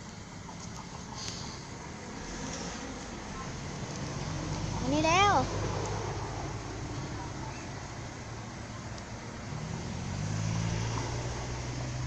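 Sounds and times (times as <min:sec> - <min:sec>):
outdoor background noise: 0:00.0 - 0:12.0
vehicle engine humming: 0:00.0 - 0:12.0.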